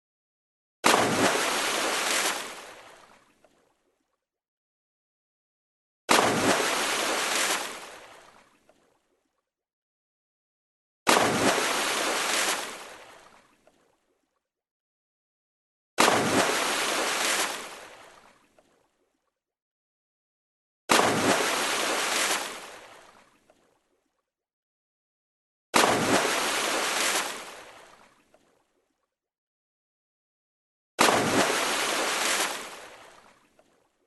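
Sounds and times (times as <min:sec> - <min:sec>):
water splash: 0:00.8 - 0:03.7, 0:06.1 - 0:09.0, 0:11.1 - 0:14.0, 0:16.0 - 0:18.9, 0:20.9 - 0:23.8, 0:25.8 - 0:28.6, 0:31.0 - 0:34.0.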